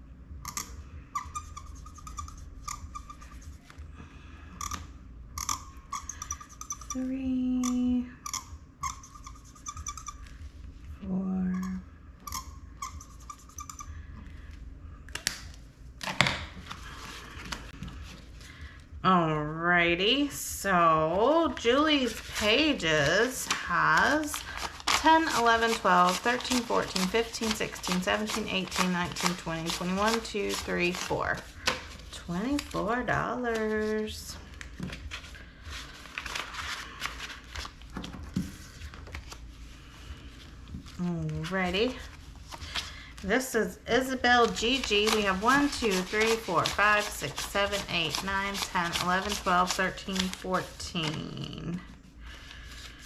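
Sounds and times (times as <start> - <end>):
marker squeaking on paper: 0.4 - 3.8, 4.6 - 10.4, 11.5 - 14.0
paper rustling: 16.6 - 18.5, 21.6 - 43.4, 44.3 - 51.4.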